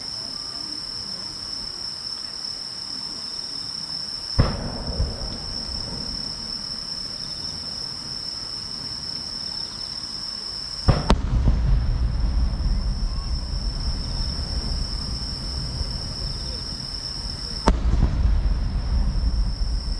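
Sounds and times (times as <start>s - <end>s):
high insect trill: 0.0s - 19.9s
firework shells banging: 4.4s - 7.6s, 10.9s - 19.9s
low rumble: 4.4s - 7.6s, 10.9s - 19.9s.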